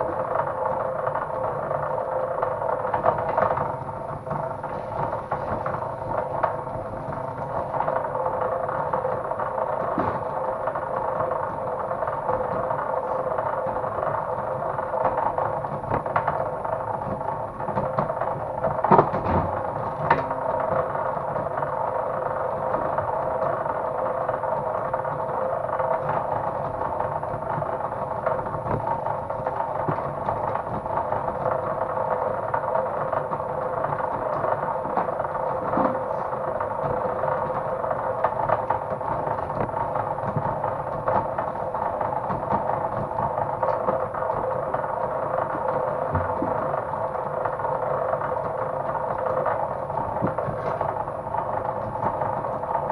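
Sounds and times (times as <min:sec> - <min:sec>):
sharp knocks and rattles: 0:09.7 - 0:10.5, 0:34.0 - 0:37.3
wire-stripping machine running: 0:27.5 - 0:52.9.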